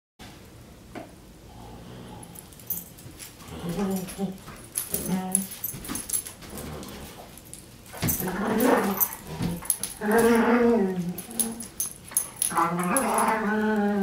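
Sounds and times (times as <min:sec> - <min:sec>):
dog whining: 0:03.5 - 0:05.7, 0:08.0 - 0:14.0.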